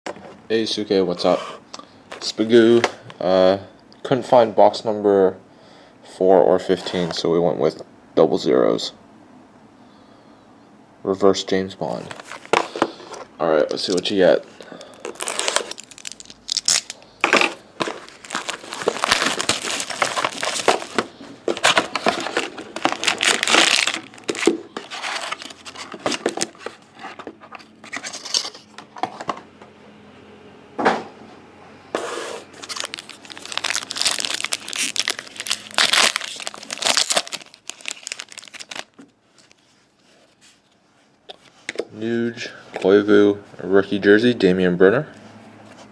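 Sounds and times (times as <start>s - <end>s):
packaging tearing and crinkling: 14.7s - 26.8s, 32.5s - 39.6s.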